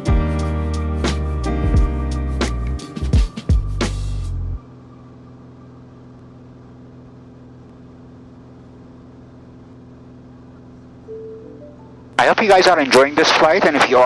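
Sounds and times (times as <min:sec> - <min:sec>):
background music: 0:00.0 - 0:04.6
propeller aircraft engine drone: 0:04.5 - 0:14.0.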